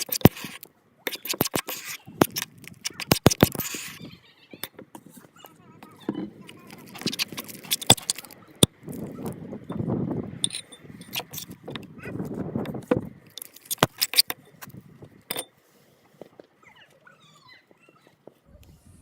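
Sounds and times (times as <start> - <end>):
slime squelching: 0.0 - 4.0, 5.9 - 9.2.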